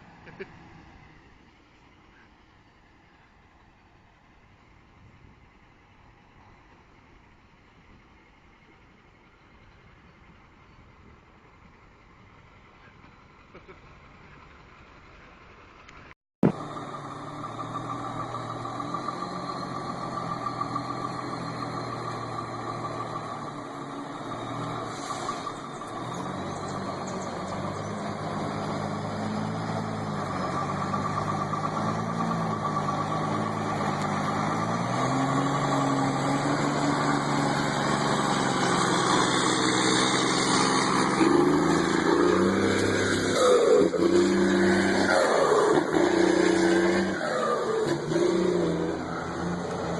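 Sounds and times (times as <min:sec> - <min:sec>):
heavy vehicle engine revving: 0:16.4 - 0:49.9.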